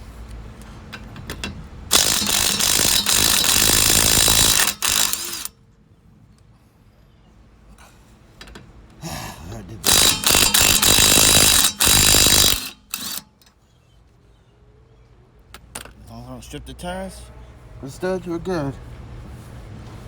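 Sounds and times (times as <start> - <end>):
impact wrench hammering lug nut: 0.9 - 5.5, 9.8 - 13.3.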